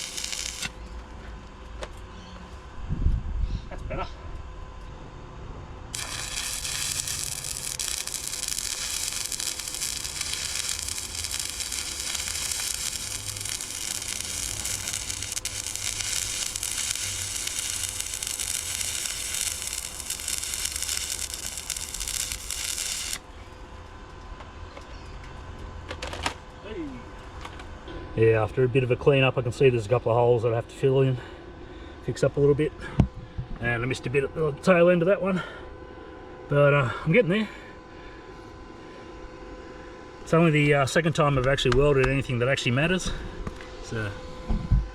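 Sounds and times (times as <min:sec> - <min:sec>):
arc welding sizzling and crackling: 0:00.0 - 0:02.0, 0:05.9 - 0:24.3.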